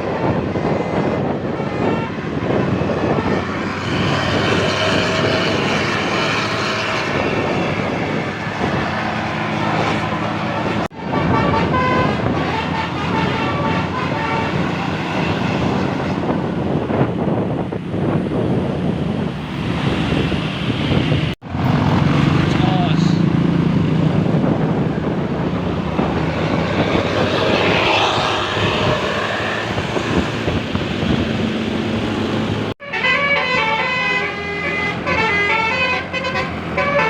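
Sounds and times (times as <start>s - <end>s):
bus engine running: 0.0s - 37.0s
road traffic: 0.0s - 37.0s
multi-note bus horn tooting: 1.3s - 8.1s, 10.4s - 16.4s, 32.8s - 37.0s.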